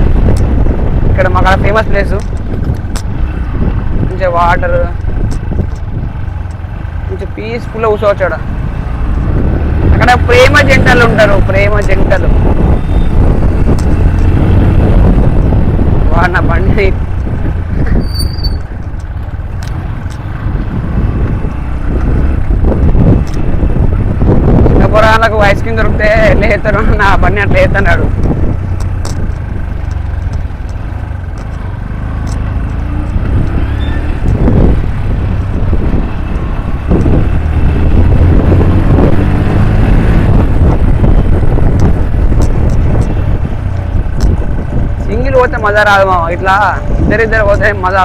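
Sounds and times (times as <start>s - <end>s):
motorcycle engine running: 0.0s - 48.0s
wind buffeting microphone: 0.0s - 48.0s.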